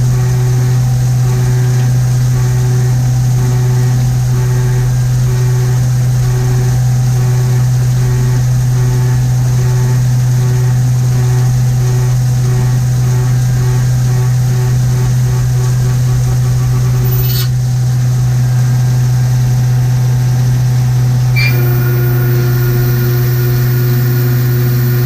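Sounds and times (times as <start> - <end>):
milling machine humming: 0.0 - 25.0
faint pulsing high tone: 21.3 - 25.0.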